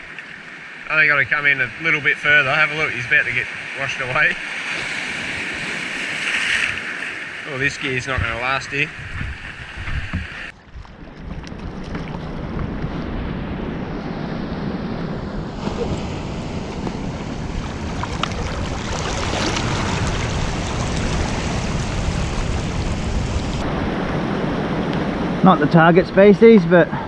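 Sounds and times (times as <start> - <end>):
surf washing over rocks: 0.0 - 14.4, 15.0 - 27.0
wind buffeting microphone: 7.6 - 27.0.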